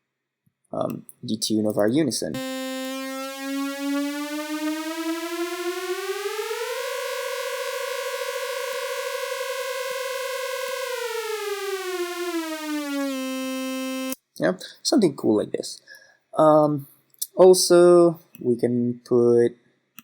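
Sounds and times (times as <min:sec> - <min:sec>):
synthesizer riser sweeping up and down: 0:02.4 - 0:14.2.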